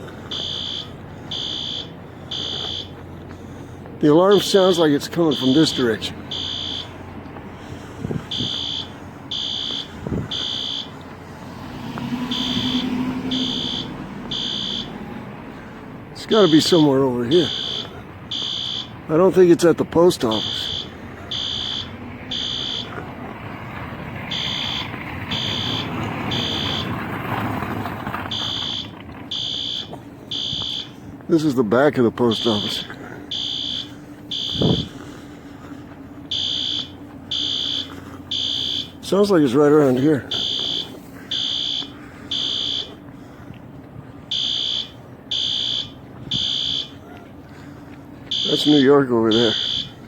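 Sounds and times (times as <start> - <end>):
fire alarm horn beeps: 0.3 - 3.0, 4.3 - 7.0, 8.3 - 11.0, 12.3 - 15.0, 16.3 - 19.0, 20.3 - 23.0, 24.3 - 27.0, 28.3 - 31.1, 32.3 - 35.0, 36.3 - 39.1, 39.9 - 43.0, 44.3 - 47.0, 48.3 - 50.0.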